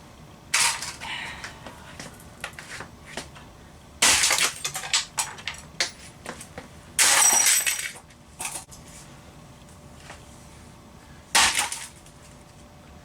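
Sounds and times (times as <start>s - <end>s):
glass breaking and crunching: 4.0s - 5.5s, 7.0s - 8.0s, 11.4s - 11.9s
tinkles of falling glass pieces: 7.0s - 8.0s.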